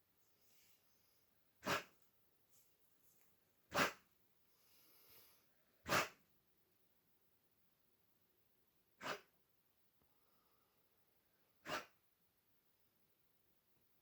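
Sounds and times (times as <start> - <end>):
puppy coughing: 1.6 - 1.9, 3.7 - 4.0, 5.8 - 6.2, 11.6 - 12.0.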